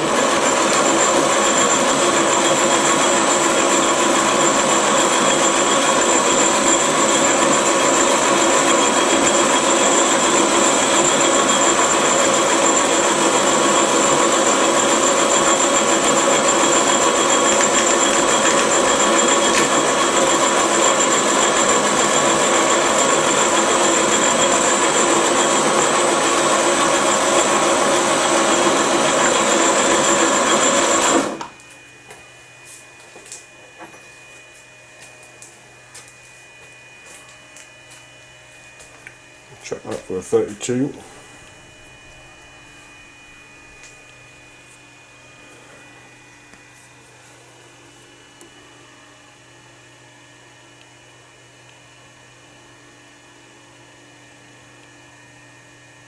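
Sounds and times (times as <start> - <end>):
high-pitched whines: 0.0 - 31.6
lathe gear-train whir: 0.0 - 31.7.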